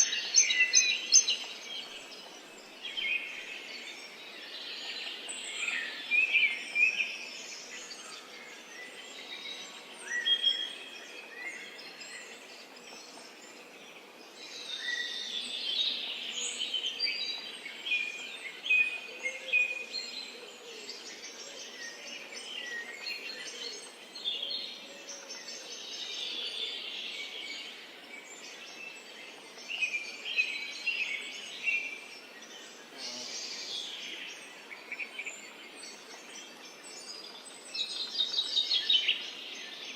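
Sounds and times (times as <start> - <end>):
songbirds chirping and trilling: 0.0 - 39.9
light background hiss: 27.0 - 39.8.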